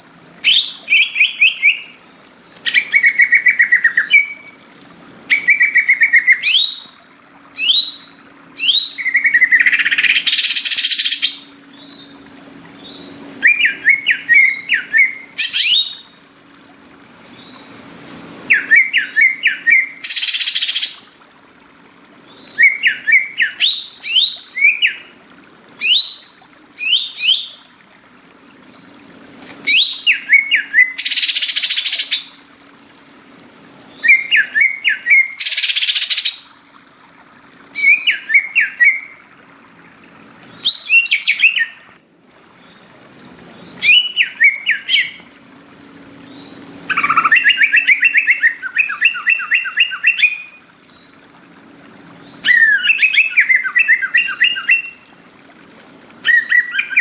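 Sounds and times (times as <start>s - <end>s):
faint steady hum: 0.0s - 57.0s
bird chirping and whistling: 0.4s - 2.0s, 2.6s - 4.6s, 5.3s - 7.0s, 7.6s - 12.2s, 12.8s - 16.2s, 18.5s - 21.1s, 22.3s - 25.1s, 25.8s - 27.6s, 29.6s - 32.4s, 33.9s - 36.4s, 37.8s - 39.2s, 40.5s - 41.9s, 43.7s - 45.3s, 46.3s - 50.6s, 52.4s - 55.0s, 56.2s - 57.0s
harsh raspy bird notes: 46.5s - 50.6s.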